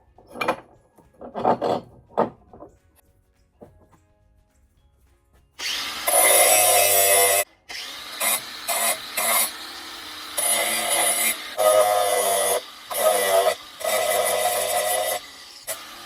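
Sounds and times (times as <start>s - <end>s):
power tool whining: 5.6s - 16.0s.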